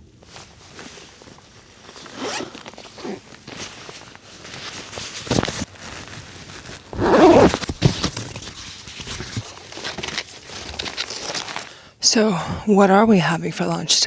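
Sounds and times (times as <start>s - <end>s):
rustling of gear: 0.0s - 11.7s.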